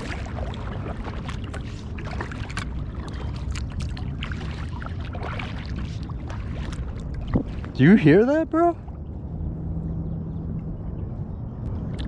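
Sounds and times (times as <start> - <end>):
paddle blades splashing: 0.0 - 9.1
steady low rumble: 0.0 - 12.0.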